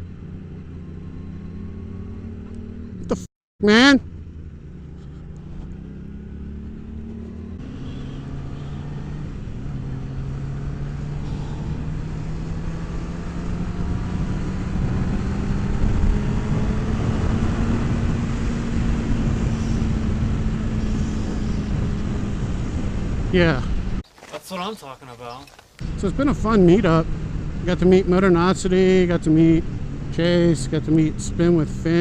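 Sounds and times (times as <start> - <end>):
motorcycle engine accelerating: 0.0 - 3.2, 4.0 - 24.0, 25.8 - 32.0
wind rush: 13.5 - 24.0.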